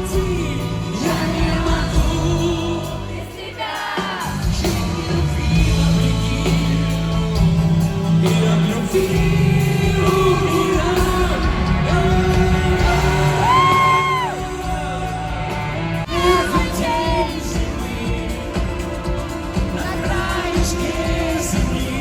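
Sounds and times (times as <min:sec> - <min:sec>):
man singing slow melody: 0:00.0 - 0:03.2, 0:04.8 - 0:22.0
full band playing: 0:00.0 - 0:22.0.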